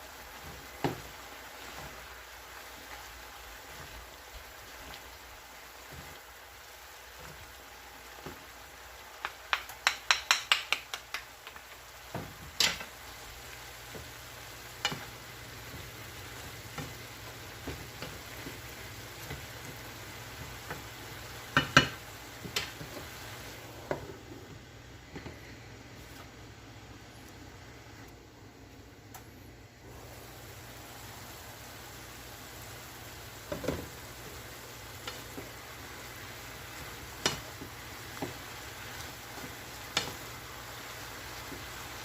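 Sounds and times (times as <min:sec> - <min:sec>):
food sizzling in a pan: 0:00.0 - 0:26.5, 0:29.9 - 0:42.0
utensil clacking against pan: 0:09.2 - 0:12.9, 0:21.5 - 0:23.0, 0:37.1 - 0:38.4.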